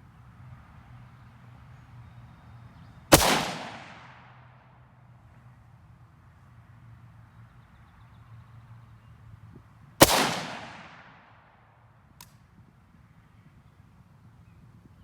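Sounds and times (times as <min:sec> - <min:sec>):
rifle shot with echo: 0:03.1 - 0:04.4, 0:10.0 - 0:11.5
faint click: 0:12.2 - 0:12.4.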